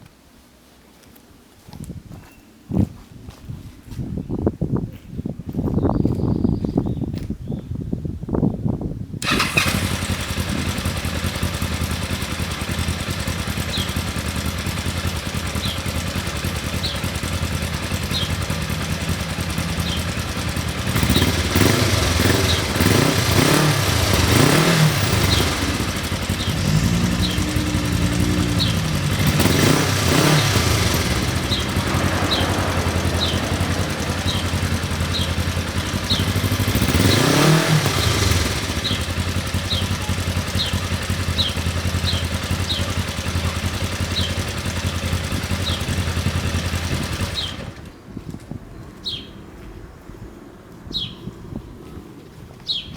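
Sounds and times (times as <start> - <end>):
motorcycle engine idling and revving: 9.2 - 49.9.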